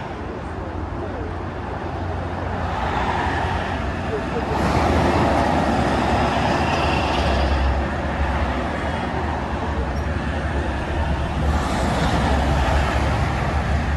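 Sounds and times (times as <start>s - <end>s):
road and tyre noise: 0.0s - 13.9s.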